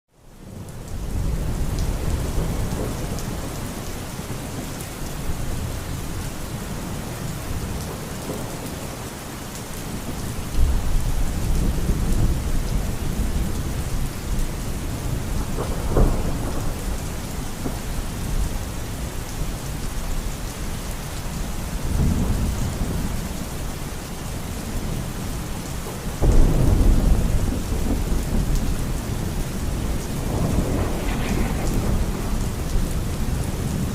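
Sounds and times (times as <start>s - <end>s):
heavy rain: 0.1s - 33.9s
rolling thunder: 10.0s - 19.5s, 26.2s - 33.9s
sharp thunder crack: 26.2s - 33.4s.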